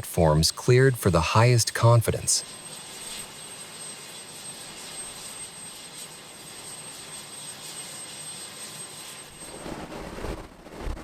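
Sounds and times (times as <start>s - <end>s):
aircraft engine rushing hiss: 0.0s - 2.4s
thin high whine: 0.0s - 10.5s.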